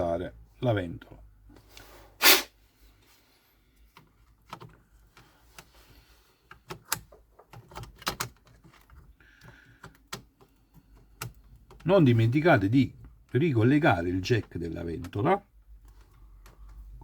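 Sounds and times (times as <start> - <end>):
plastic and metal parts clicking: 3.9 - 5.8, 6.4 - 11.9.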